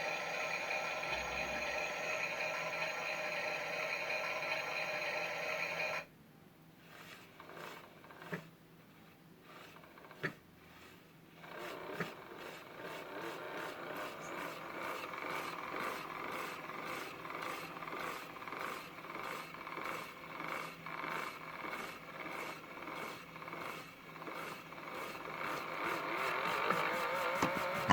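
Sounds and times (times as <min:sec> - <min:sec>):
toy washing machine motor churning: 0:00.0 - 0:06.1, 0:06.8 - 0:08.5, 0:09.4 - 0:27.9
held electronic tone: 0:00.1 - 0:03.2.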